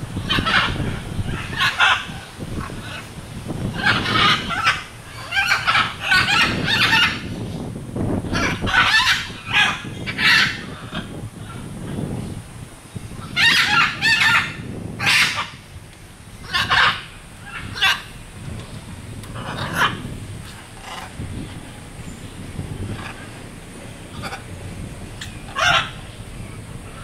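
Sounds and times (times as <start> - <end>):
parrots squawking: 0.2 - 3.1, 3.7 - 7.4, 8.3 - 11.6, 13.2 - 15.6, 16.4 - 18.1, 19.3 - 21.2, 22.8 - 23.4, 24.0 - 26.2.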